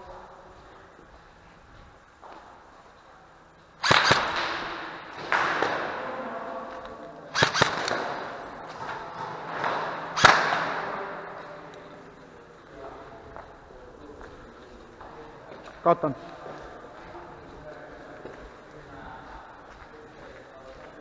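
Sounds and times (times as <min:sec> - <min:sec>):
sharp cracks echoing: 0:02.2 - 0:17.3.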